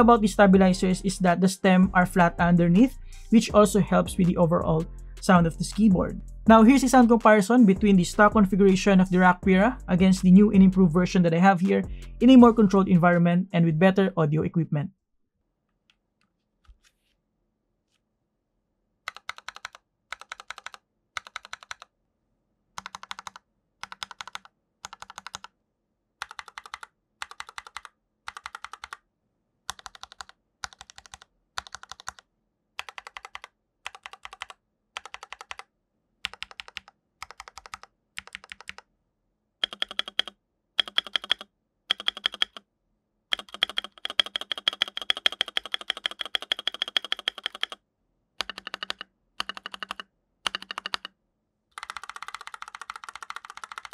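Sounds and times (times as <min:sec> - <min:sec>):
mechanical keyboard typing: 0:19.1 - 0:21.9, 0:22.8 - 0:25.5, 0:26.2 - 0:29.0, 0:29.7 - 0:38.9, 0:39.6 - 0:42.6, 0:43.3 - 0:47.8, 0:48.4 - 0:51.1, 0:51.8 - 0:53.9.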